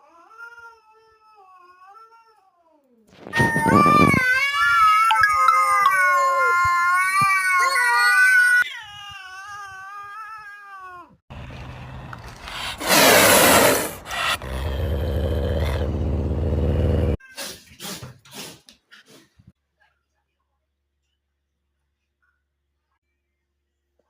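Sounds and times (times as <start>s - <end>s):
cat yowling: 3.2s - 11.2s
cat hissing: 12.3s - 16.0s.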